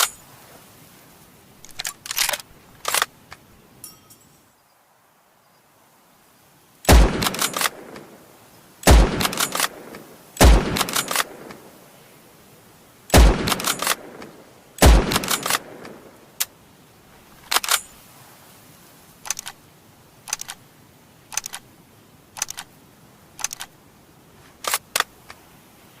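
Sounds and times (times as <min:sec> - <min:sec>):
rifle bolt metallic clicks: 0:01.6 - 0:03.4, 0:06.9 - 0:08.1, 0:08.8 - 0:11.6, 0:13.1 - 0:16.5, 0:17.4 - 0:17.9, 0:20.3 - 0:20.6, 0:21.3 - 0:21.6, 0:22.4 - 0:22.7, 0:23.4 - 0:23.8, 0:24.6 - 0:25.4
rifle shots: 0:06.9 - 0:08.1, 0:08.8 - 0:11.6, 0:13.1 - 0:16.1.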